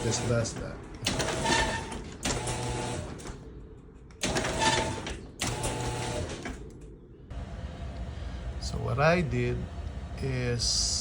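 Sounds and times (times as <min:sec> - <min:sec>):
garage door opener motor running: 0:00.0 - 0:03.5, 0:04.2 - 0:06.7, 0:07.3 - 0:08.9.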